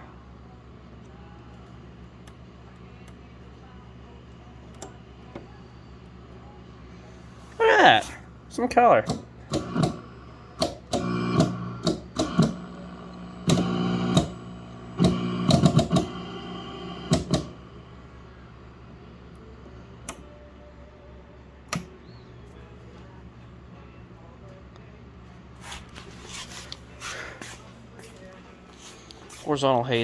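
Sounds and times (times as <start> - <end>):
steady low hum: 0.0 - 29.9
television buzz: 0.0 - 30.0
television clicks: 4.7 - 5.5, 9.0 - 17.7, 20.0 - 20.3, 21.7 - 22.2.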